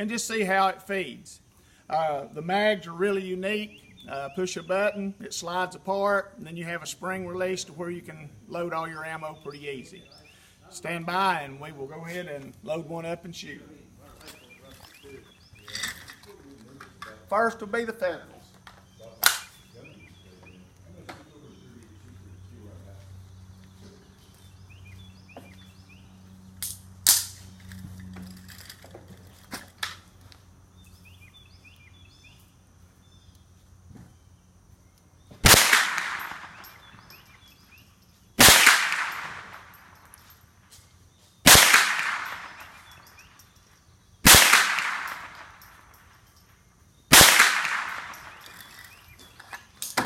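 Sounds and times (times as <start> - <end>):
sharp clicks: 18.7 - 19.6
rifle shots with echo: 35.4 - 37.0, 38.4 - 40.0, 41.4 - 43.0, 44.2 - 46.0, 47.1 - 48.6.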